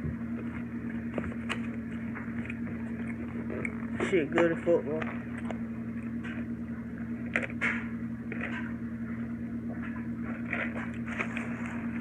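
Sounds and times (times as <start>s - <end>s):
steady low hum: 0.0s - 12.0s
chewing food: 0.4s - 4.0s.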